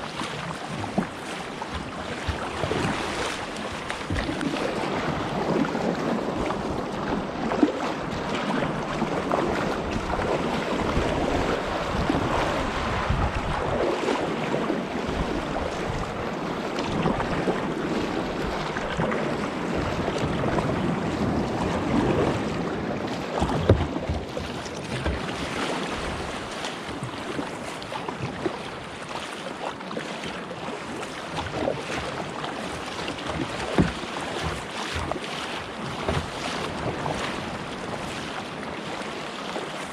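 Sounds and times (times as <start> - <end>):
wind buffeting the microphone: 0.0 - 27.6
water sloshing around a kayak: 0.0 - 39.9.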